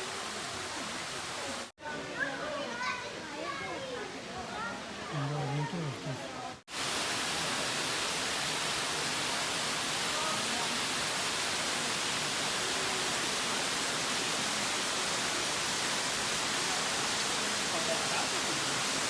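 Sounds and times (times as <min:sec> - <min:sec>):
waterfall rushing: 0:06.7 - 0:19.0.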